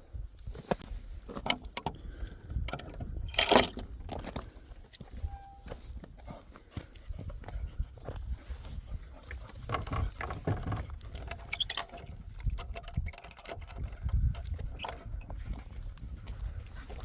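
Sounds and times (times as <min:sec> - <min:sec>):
wind rumbling on microphone: 0:00.0 - 0:17.0
footsteps crunching on rough track: 0:04.1 - 0:11.5, 0:13.9 - 0:17.0.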